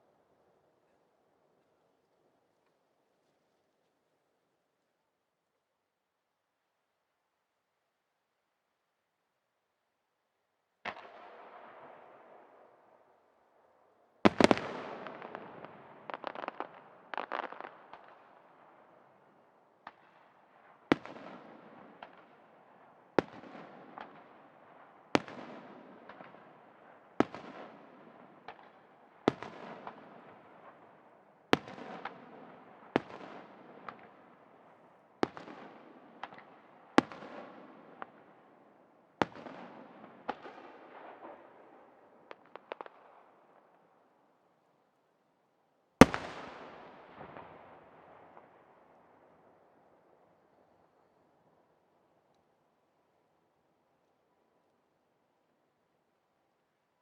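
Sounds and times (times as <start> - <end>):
rapid firework pops: 35.2 - 38.2, 42.3 - 43.2.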